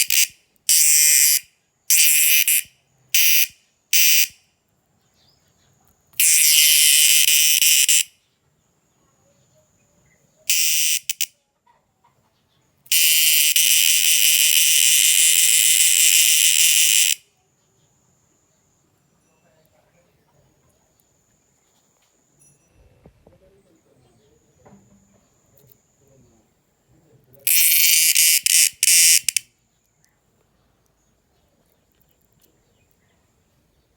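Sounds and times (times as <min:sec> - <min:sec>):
insect buzzing call: 0:00.0 - 0:04.4, 0:06.2 - 0:08.1, 0:10.5 - 0:11.3, 0:12.8 - 0:17.3, 0:27.4 - 0:29.5.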